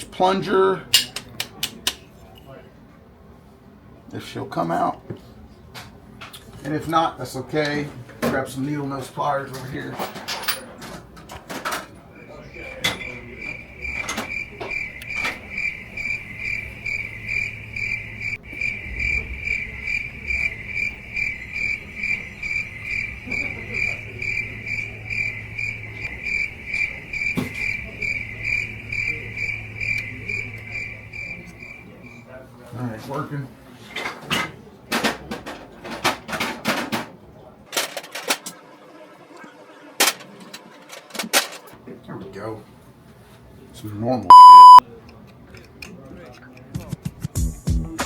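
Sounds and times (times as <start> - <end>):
rhythmic chirping: 44.3 - 44.8.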